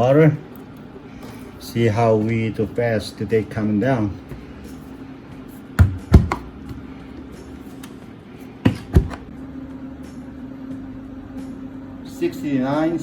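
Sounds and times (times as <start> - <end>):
fridge compressor humming: 0.0 - 13.0
sharp knocks: 5.8 - 6.5.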